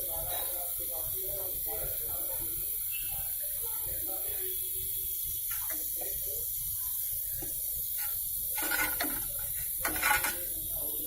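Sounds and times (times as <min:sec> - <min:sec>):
solvent and air hissing: 0:00.0 - 0:11.0
liquid gurgling: 0:03.9 - 0:11.0.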